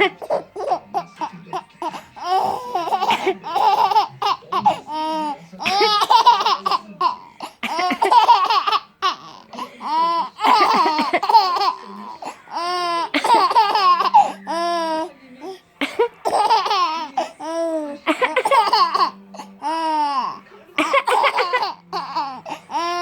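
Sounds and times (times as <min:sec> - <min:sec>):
person coughing: 0:15.8 - 0:16.6.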